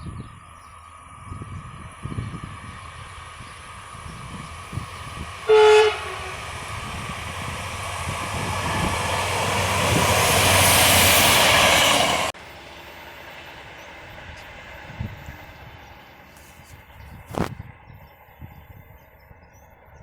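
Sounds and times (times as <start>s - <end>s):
rushing rail noise: 0.0s - 20.0s
train horn blast: 5.4s - 7.2s.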